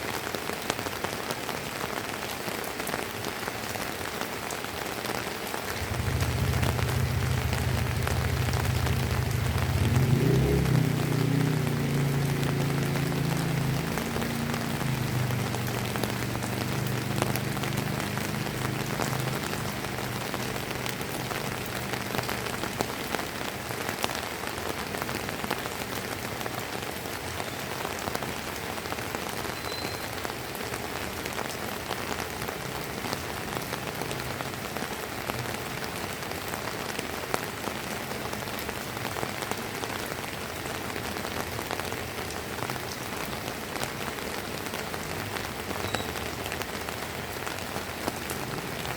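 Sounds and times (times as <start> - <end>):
drizzling rain: 0.0 - 48.9
low hum: 5.8 - 10.7.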